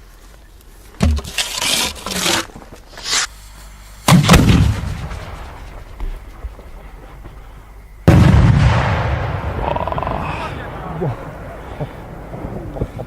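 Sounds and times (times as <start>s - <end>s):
firework boom rumbling: 8.0s - 13.0s.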